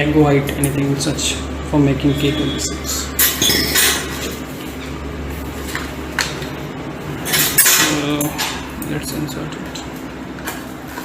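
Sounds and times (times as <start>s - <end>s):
metal mixer beaters clinking: 2.1s - 4.3s, 7.2s - 9.4s.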